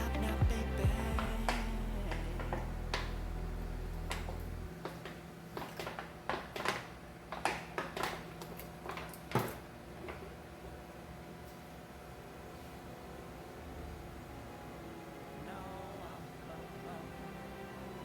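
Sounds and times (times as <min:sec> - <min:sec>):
background music: 0:00.0 - 0:04.8, 0:12.3 - 0:18.0
objects knocking and clicking: 0:04.1 - 0:10.3.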